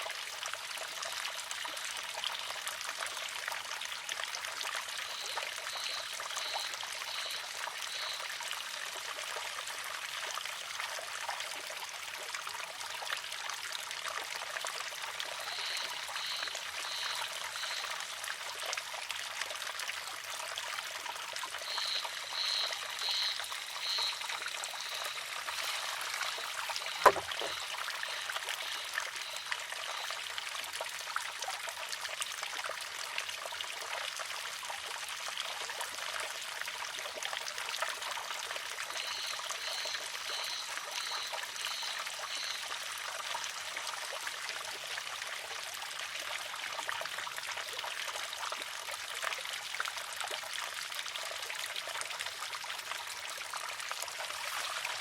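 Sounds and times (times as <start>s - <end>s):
water trickling: 0.0s - 55.0s
bamboo arm clacking on rock: 26.9s - 27.7s.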